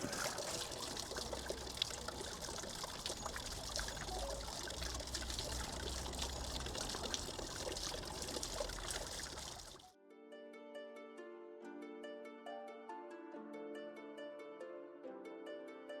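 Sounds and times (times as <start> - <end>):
fountain water splashing: 0.0 - 9.9.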